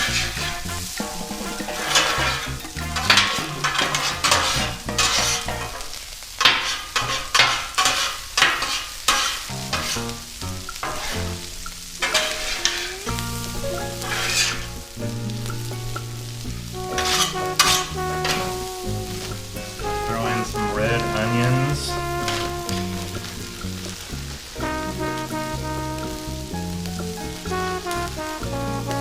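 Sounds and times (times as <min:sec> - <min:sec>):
background music: 0:00.0 - 0:05.9, 0:09.6 - 0:29.0
food sizzling: 0:00.0 - 0:29.0
metal spatulas scraping griddle: 0:00.2 - 0:10.0.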